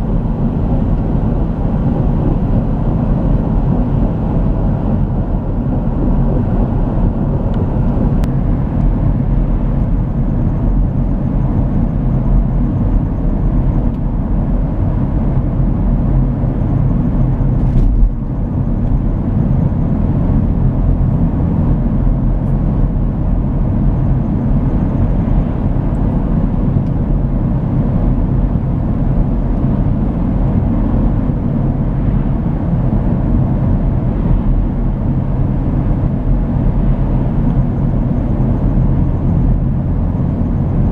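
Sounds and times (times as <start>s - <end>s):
van tyre and road noise: 0.0s - 40.9s.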